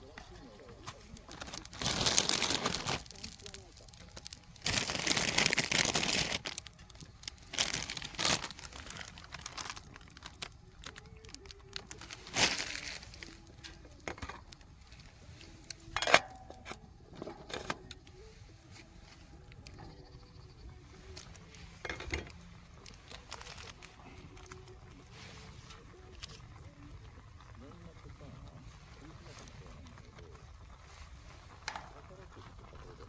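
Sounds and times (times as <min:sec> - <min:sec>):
crinkling and rustling: 0:00.0 - 0:20.1, 0:20.7 - 0:33.0.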